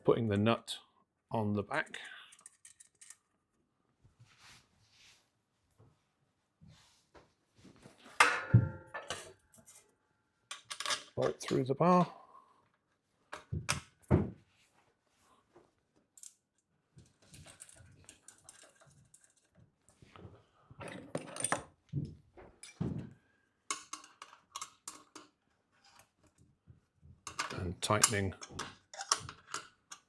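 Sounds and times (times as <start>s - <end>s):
bolt and nut clicking and clattering: 2.2s - 3.3s, 10.5s - 11.6s, 23.7s - 25.3s, 27.3s - 30.0s
sharp knocks on metal bar: 8.2s - 9.0s.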